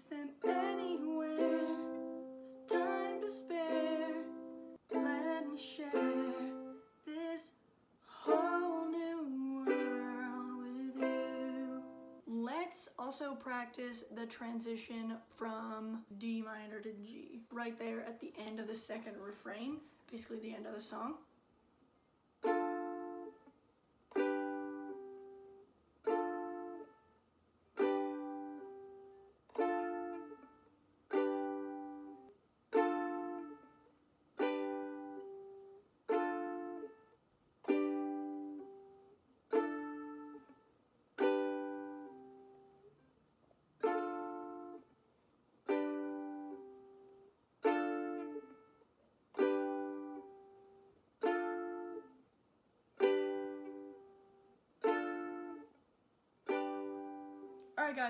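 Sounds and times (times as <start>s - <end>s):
ukulele chord strums: 0.0s - 7.0s, 8.2s - 12.3s, 22.4s - 23.5s, 24.1s - 27.1s, 27.8s - 43.0s, 43.8s - 45.0s, 45.6s - 52.2s, 53.0s - 55.8s, 56.4s - 57.7s.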